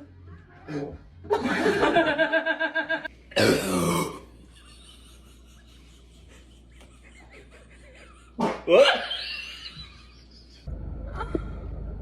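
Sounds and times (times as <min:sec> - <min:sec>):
person burping: 0:03.3 - 0:04.3.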